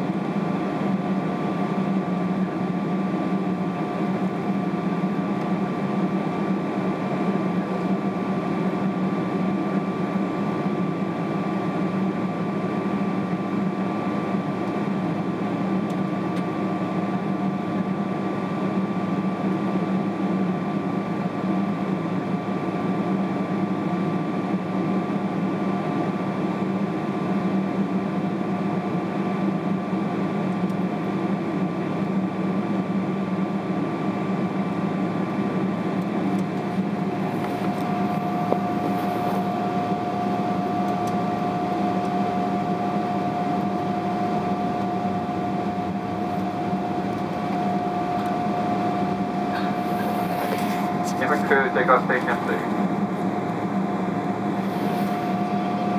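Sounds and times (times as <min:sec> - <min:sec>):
jet engines running at low power: 0:00.0 - 0:55.9
air-conditioning hum: 0:25.3 - 0:55.9.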